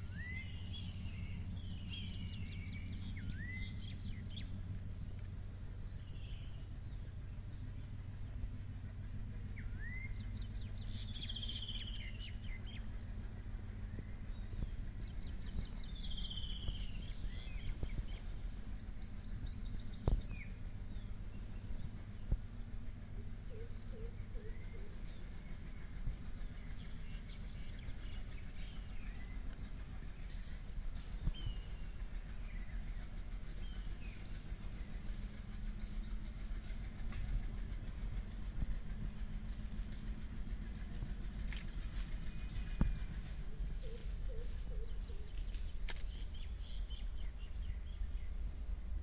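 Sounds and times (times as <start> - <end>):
birds chirping and whistling: 0.0 - 4.5, 14.0 - 21.1
steady low rumble: 0.0 - 49.0.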